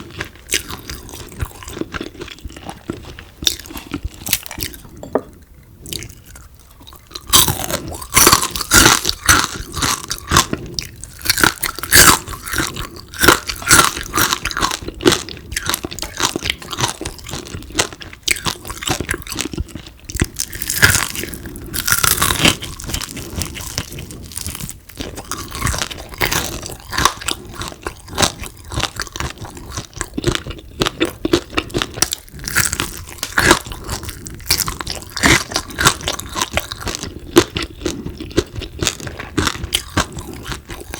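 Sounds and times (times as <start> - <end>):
person chewing crispy food: 0.0 - 40.9.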